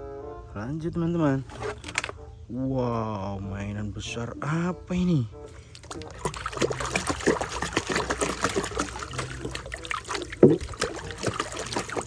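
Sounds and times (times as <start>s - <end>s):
toy being scrubbed: 1.5s - 2.1s, 6.0s - 12.0s
water splashing and sloshing: 5.5s - 12.0s.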